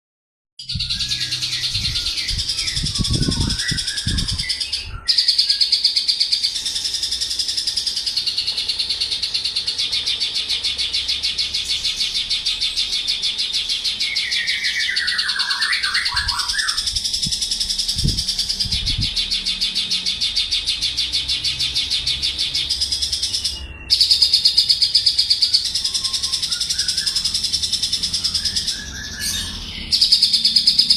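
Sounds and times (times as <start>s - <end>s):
bird singing rapid trills: 0.6s - 30.9s
lower bird chirps: 0.6s - 30.9s.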